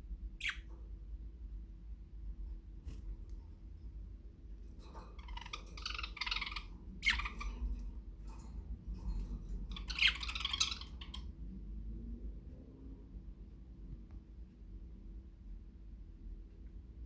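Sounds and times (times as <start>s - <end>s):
budgerigar chattering and warbling: 0.4s - 0.7s, 5.2s - 7.5s, 9.7s - 11.3s.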